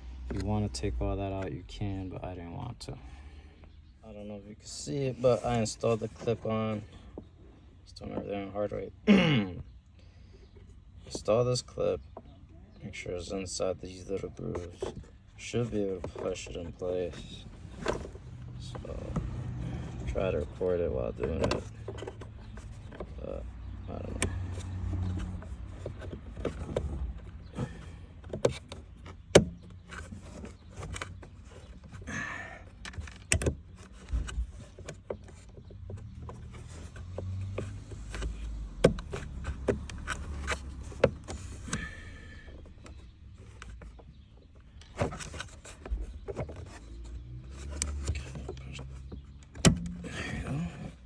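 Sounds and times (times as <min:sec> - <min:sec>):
low handling rumble: 0:11.3 - 0:33.1
metal clicks and knocks: 0:44.8 - 0:51.0.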